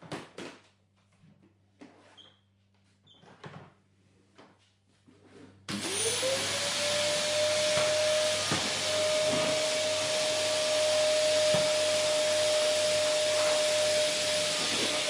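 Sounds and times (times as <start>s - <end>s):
vacuum cleaner running: 5.7s - 15.0s.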